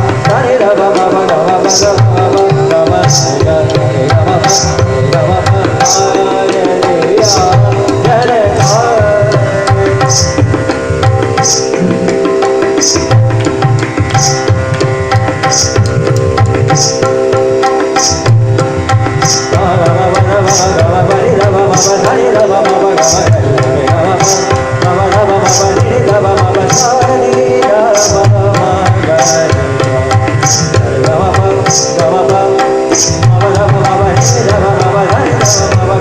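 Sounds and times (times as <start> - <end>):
long held melodic notes: 0.0 - 36.0
tabla rhythm: 0.0 - 36.0
bright high stroke: 9.5 - 19.5.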